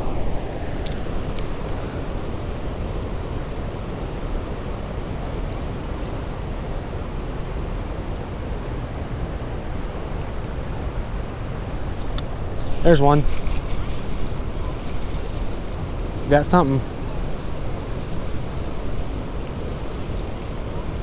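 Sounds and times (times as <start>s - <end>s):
fast-flowing river: 11.5s - 21.0s.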